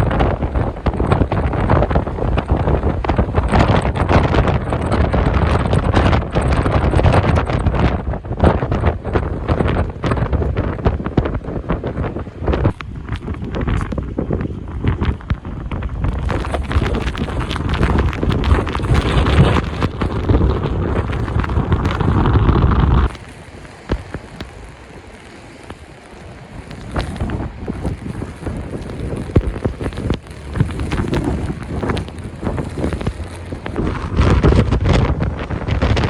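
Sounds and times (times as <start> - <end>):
strong wind buffeting microphone: 0.0 - 36.0
scattered ticks: 16.0 - 34.9.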